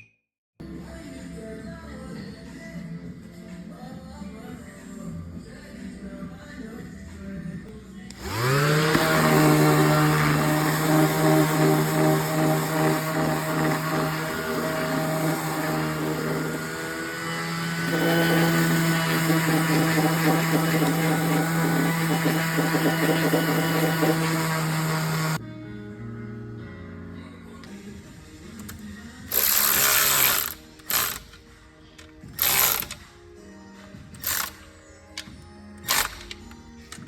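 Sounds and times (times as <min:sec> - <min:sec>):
small electric motor whining: 0:08.2 - 0:25.4.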